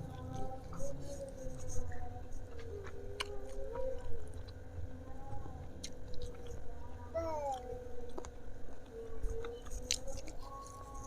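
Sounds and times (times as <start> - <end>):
wet chewing of food: 0.1 - 4.6, 7.5 - 11.0
crunching clicks: 7.5 - 11.0.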